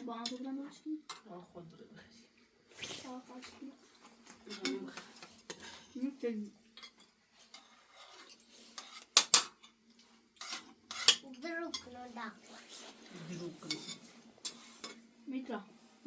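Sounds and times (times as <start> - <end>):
dishes and utensils clinking: 4.4 - 6.0, 6.8 - 9.8, 10.4 - 12.0, 13.2 - 15.1.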